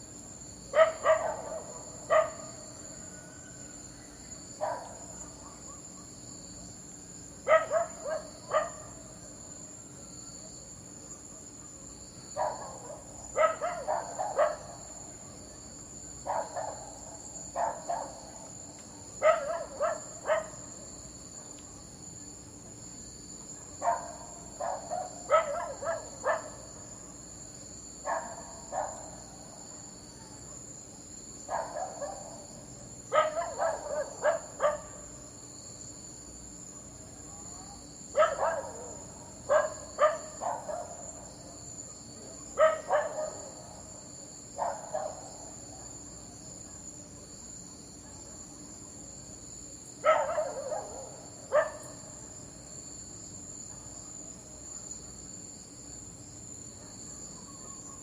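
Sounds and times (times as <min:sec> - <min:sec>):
high-pitched insect chorus: 0:00.0 - 0:58.0
dog barking: 0:00.7 - 0:02.6, 0:04.6 - 0:06.0, 0:07.4 - 0:09.0, 0:12.4 - 0:14.9, 0:16.2 - 0:18.4, 0:19.2 - 0:20.7, 0:23.5 - 0:27.3, 0:28.0 - 0:29.3, 0:31.4 - 0:32.5, 0:33.1 - 0:35.2, 0:38.1 - 0:43.9, 0:44.6 - 0:47.4, 0:48.0 - 0:48.4, 0:50.0 - 0:52.1, 0:56.7 - 0:58.0.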